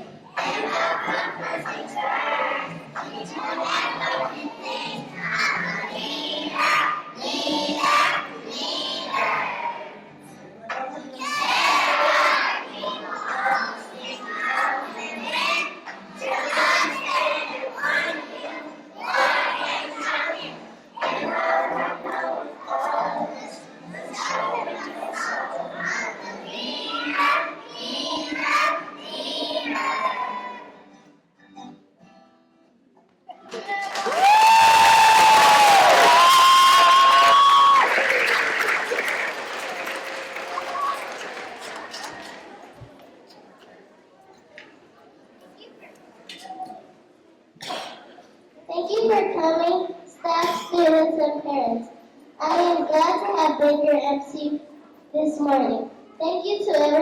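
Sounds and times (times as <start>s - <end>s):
music: 0.0s - 42.4s
children singing: 0.3s - 10.0s, 10.7s - 30.8s.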